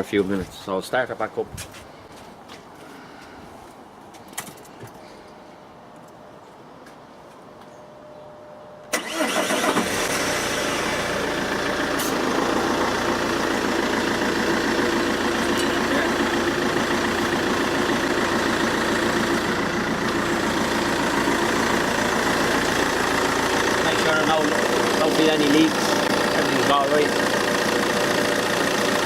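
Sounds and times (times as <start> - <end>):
car engine starting and idling: 8.8 - 29.0.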